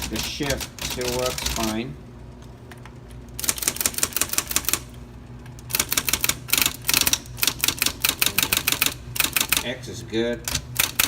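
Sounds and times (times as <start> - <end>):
electric typewriter typing: 0.0 - 1.9, 3.4 - 4.9, 5.7 - 9.8, 10.4 - 11.0.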